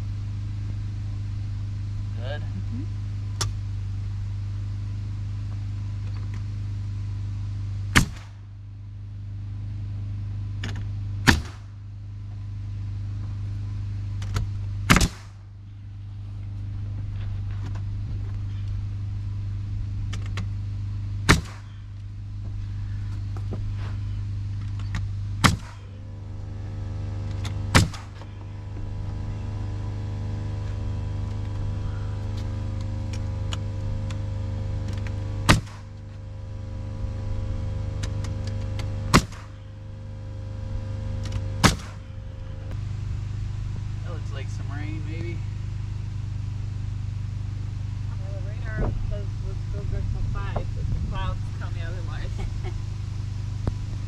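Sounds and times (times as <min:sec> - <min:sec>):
low machine hum: 0:00.0 - 0:54.0
nail gun shots: 0:07.9 - 0:08.4, 0:11.2 - 0:11.8, 0:14.9 - 0:15.4, 0:21.2 - 0:21.8, 0:25.4 - 0:25.9, 0:27.7 - 0:28.2, 0:35.5 - 0:36.0, 0:39.1 - 0:39.6, 0:41.6 - 0:42.0.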